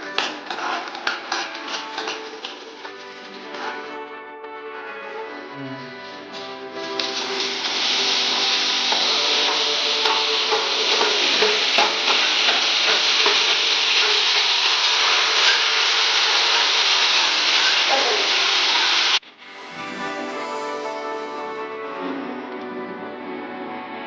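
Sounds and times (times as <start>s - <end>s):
food sizzling in hot oil: 0.0s - 3.9s, 6.3s - 19.2s
spatula scraping pan: 0.0s - 4.0s, 4.9s - 19.2s.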